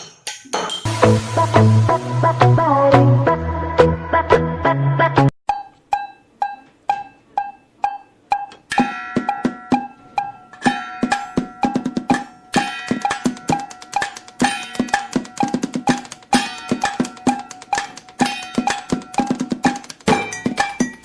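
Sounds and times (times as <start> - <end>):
percussion strikes on objects: 0.0 - 1.3, 5.5 - 21.0
held ringing tone: 5.5 - 15.7.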